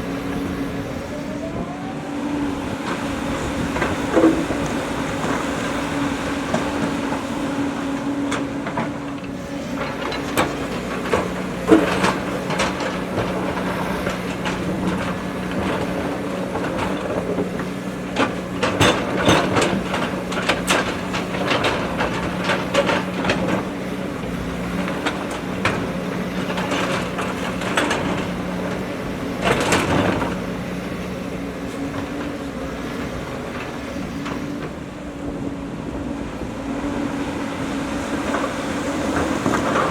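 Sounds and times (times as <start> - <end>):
diesel engine running: 0.0 - 39.9
metallic clanks from digger bucket: 8.3 - 34.8.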